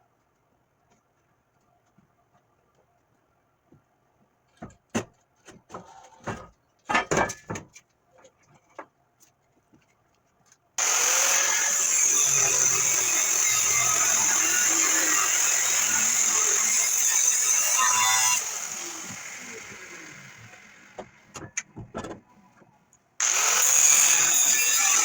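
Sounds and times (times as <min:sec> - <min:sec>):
loud power tool: 0:10.8 - 0:21.3, 0:23.2 - 0:25.0.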